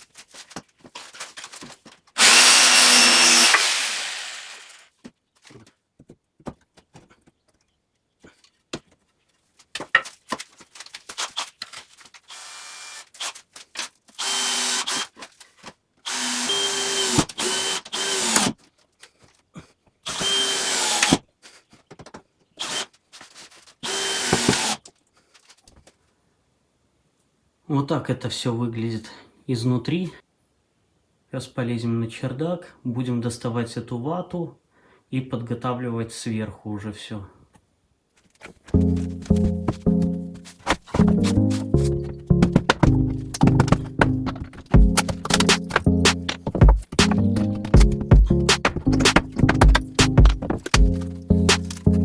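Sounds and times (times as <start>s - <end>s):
power drill whining: 2.2s - 4.8s, 12.3s - 13.4s, 14.2s - 15.2s, 16.1s - 18.5s, 20.1s - 21.2s, 22.6s - 22.9s, 23.8s - 24.8s.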